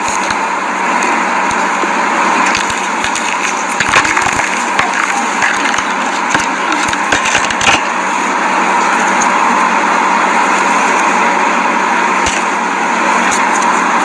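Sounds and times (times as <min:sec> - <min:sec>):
slime crackles and pops: 0:02.5 - 0:05.8.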